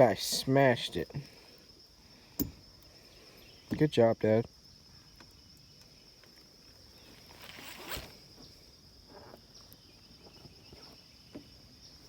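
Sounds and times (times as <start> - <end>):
brief rustling scrape: 7.3 - 8.2.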